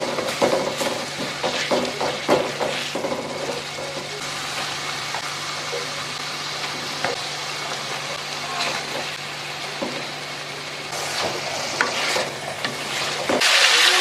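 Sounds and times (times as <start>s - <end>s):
utensil scraping a pan: 0.0s - 4.2s, 10.9s - 13.6s
food sizzling in a pan: 0.0s - 14.0s.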